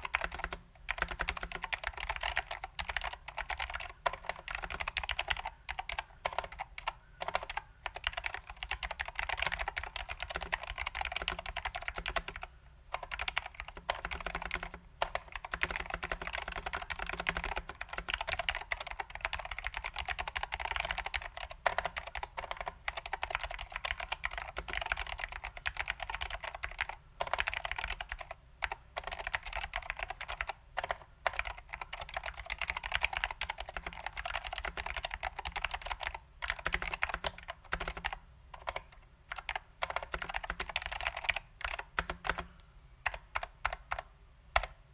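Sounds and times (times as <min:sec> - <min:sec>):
fast typing on mechanical keyboard: 0:00.0 - 0:42.5, 0:43.1 - 0:44.8.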